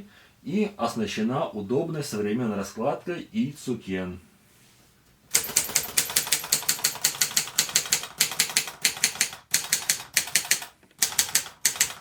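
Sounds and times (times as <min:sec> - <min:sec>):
typewriter key strikes: 0:05.3 - 0:12.0.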